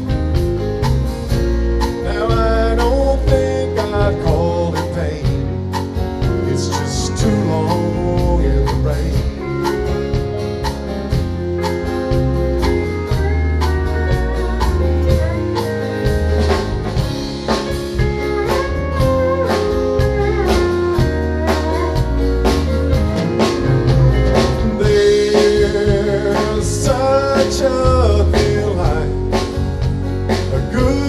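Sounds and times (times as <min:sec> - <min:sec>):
live country band playing: 0:00.0 - 0:31.0
lead guitar solo: 0:09.4 - 0:24.8.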